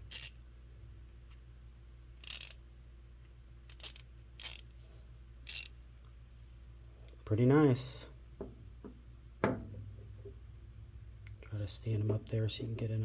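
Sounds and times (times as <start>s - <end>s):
ratchet clicking: 0.0s - 0.3s, 2.2s - 2.6s, 3.7s - 4.6s, 5.5s - 5.7s.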